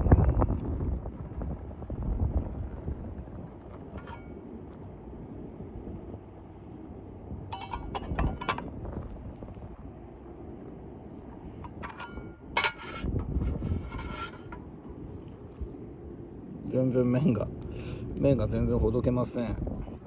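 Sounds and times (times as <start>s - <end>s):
low background rumble: 0.0s - 20.0s
metal camp cookware clinking: 3.9s - 4.4s, 7.5s - 9.2s, 11.6s - 15.2s.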